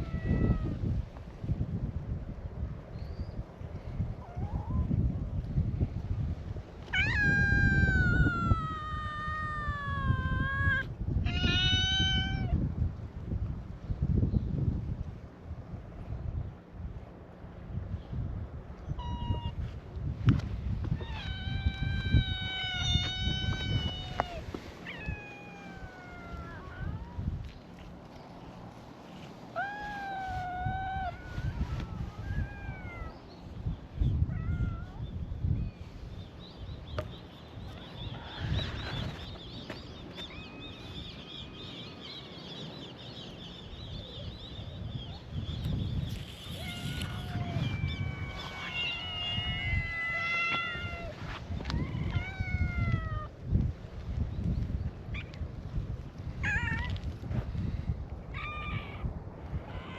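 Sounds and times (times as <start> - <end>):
cat meowing: 0.0 - 0.8, 6.9 - 12.6, 19.0 - 19.6, 21.0 - 27.2, 29.6 - 33.2, 34.2 - 35.0, 46.3 - 53.3, 56.4 - 57.0, 58.4 - 59.1.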